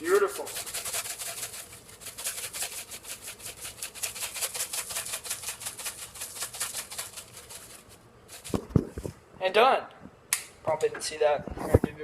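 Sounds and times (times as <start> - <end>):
seasoning shaker shaking: 0.0 - 9.0.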